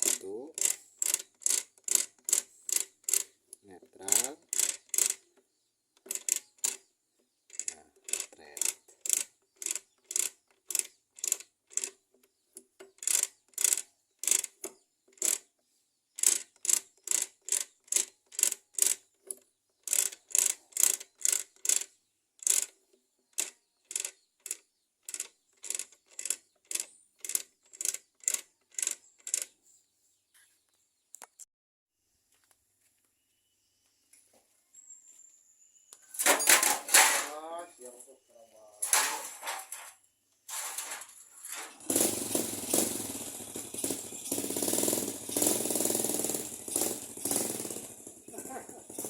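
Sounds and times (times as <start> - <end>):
motorcycle gearbox clicking: 0.0 - 3.3, 4.0 - 15.5, 16.2 - 29.5.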